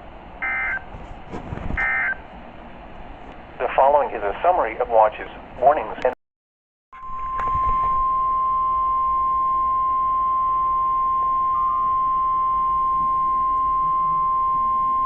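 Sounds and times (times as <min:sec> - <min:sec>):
steady alarm tone: 0:00.4 - 0:00.9, 0:01.8 - 0:02.2, 0:07.0 - 0:15.0
faint radio hiss: 0:03.6 - 0:06.2.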